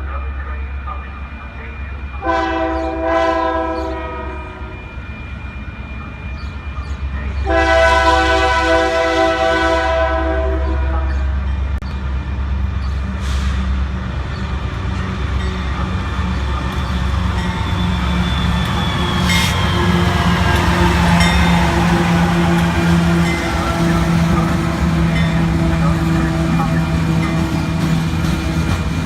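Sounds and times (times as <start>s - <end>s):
freight train rumbling: 0.0s - 29.0s
locomotive air horn blasts: 2.2s - 4.8s, 7.4s - 11.2s.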